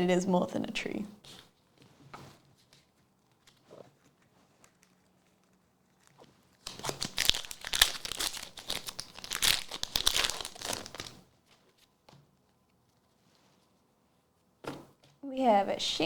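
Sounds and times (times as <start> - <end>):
foil wrapper crinkling and tearing: 4.6 - 11.3.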